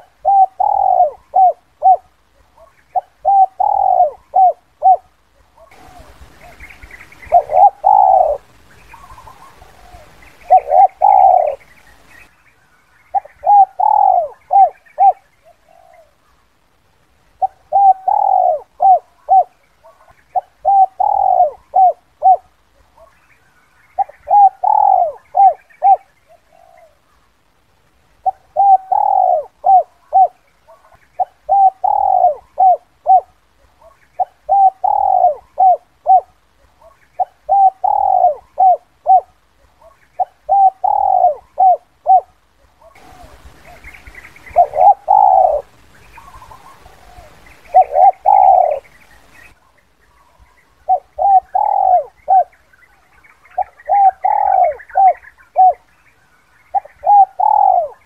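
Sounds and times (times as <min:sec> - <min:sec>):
dove cooing: 0:00.0 - 0:12.1, 0:13.1 - 0:16.4, 0:17.4 - 0:23.2, 0:23.9 - 0:27.2, 0:28.2 - 0:56.0, 0:56.6 - 0:58.0.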